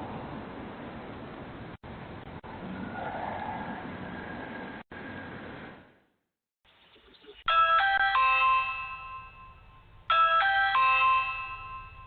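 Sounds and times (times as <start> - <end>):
electronic doorbell chime: 7.5 - 12.0.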